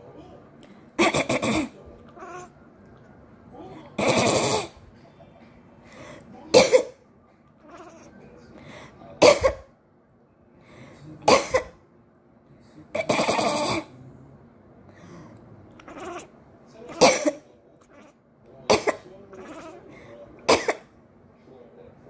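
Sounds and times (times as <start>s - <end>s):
person coughing: 1.0s - 1.7s, 6.6s - 7.0s, 9.2s - 9.6s, 11.3s - 11.8s, 17.0s - 17.4s, 20.5s - 20.8s
faint cat sounds: 1.8s - 2.6s, 7.5s - 8.3s, 15.7s - 18.2s, 18.8s - 20.5s.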